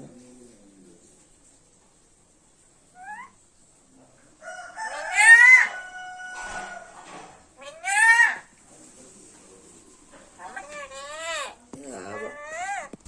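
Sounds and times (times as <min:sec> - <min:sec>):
parrot chirping: 0:02.9 - 0:03.4, 0:07.6 - 0:08.5, 0:10.3 - 0:13.0.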